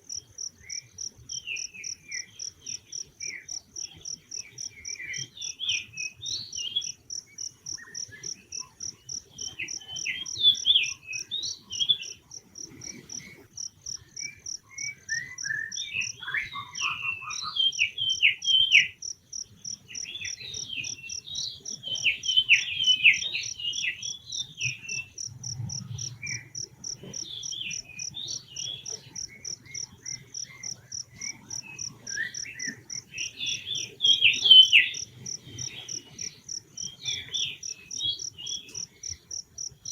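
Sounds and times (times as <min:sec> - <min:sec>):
insect trilling: 0:17.7 - 0:36.6.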